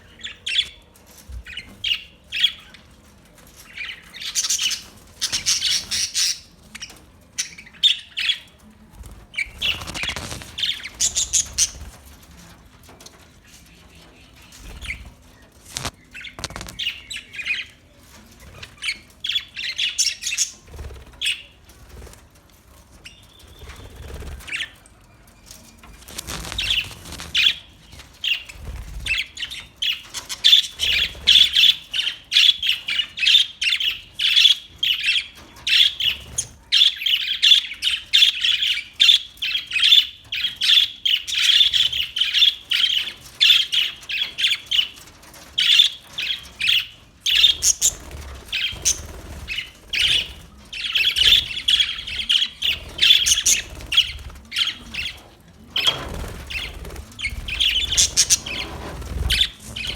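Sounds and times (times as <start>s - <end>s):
budgerigars chirping: 3.8s - 8.4s, 9.4s - 11.8s, 45.6s - 55.2s, 55.8s - 59.9s.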